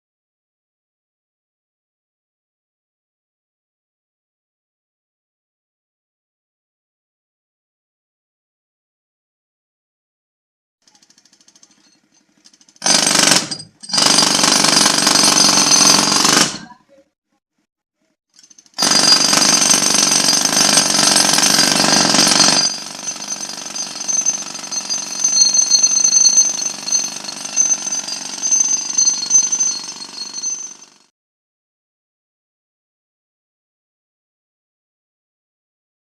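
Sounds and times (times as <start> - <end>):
pneumatic jackhammer hammering: 10.8 - 16.8, 18.3 - 31.1.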